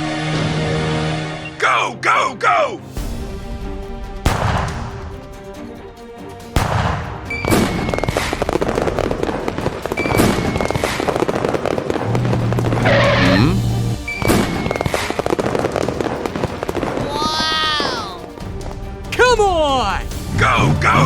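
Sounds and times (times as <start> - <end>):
background music: 0.0 - 21.0
sharp bangs: 4.2 - 5.3, 6.6 - 13.1
rapid crackling: 14.3 - 20.5.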